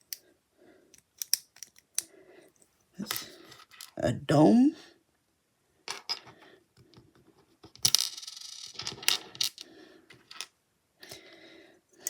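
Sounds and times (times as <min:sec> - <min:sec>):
plastic bricks clicking and clattering: 0:07.6 - 0:10.5.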